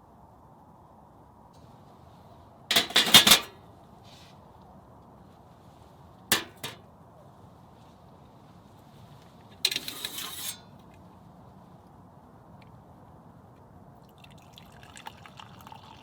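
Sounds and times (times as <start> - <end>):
dishes clinking: 2.7 - 3.5, 6.3 - 6.8
dishes rattling clatter: 2.7 - 3.5, 6.3 - 6.8.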